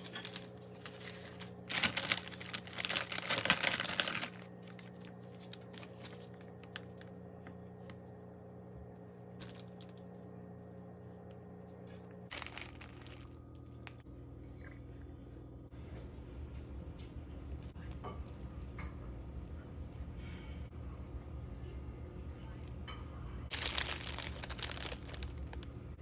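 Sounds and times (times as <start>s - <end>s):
packaging crinkling: 0.0s - 7.1s, 9.4s - 10.0s, 12.3s - 14.0s, 23.5s - 25.8s
steady background hum: 0.0s - 26.0s.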